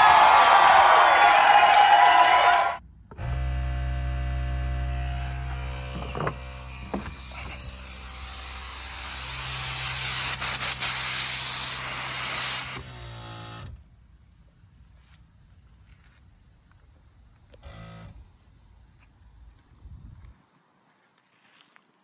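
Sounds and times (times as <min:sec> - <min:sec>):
air compressor buzzing hum: 0:03.2 - 0:13.6
air hissing: 0:05.9 - 0:12.8.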